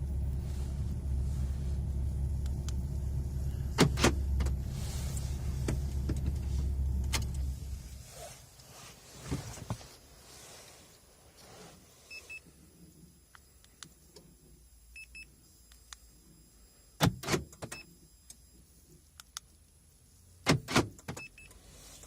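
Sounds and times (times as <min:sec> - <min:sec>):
car door locks clunking: 0:03.7 - 0:04.6.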